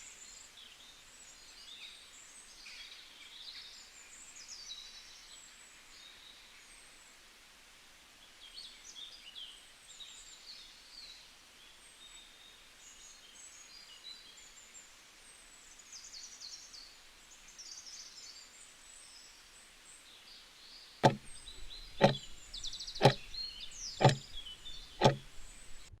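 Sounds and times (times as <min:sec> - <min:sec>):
sharp countdown knocks: 0:21.0 - 0:23.4, 0:24.0 - 0:24.4, 0:25.0 - 0:25.4
birds chirping: 0:21.0 - 0:26.0.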